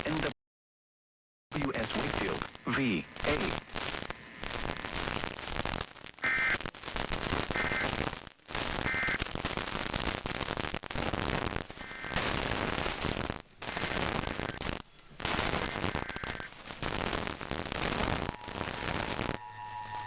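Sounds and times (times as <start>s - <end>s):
crackling radio static: 0.0s - 0.4s, 1.5s - 20.0s
two-tone digital data bursts: 15.3s - 20.0s.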